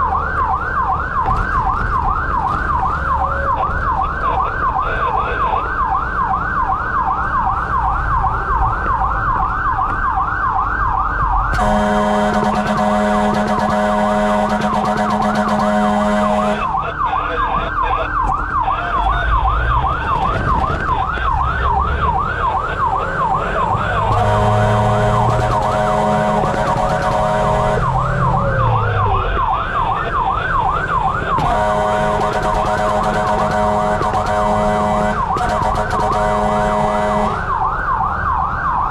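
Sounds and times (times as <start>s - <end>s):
fire truck siren yelping: 0.0s - 38.9s
horn blasts: 11.5s - 16.8s, 24.0s - 28.0s, 31.4s - 37.5s.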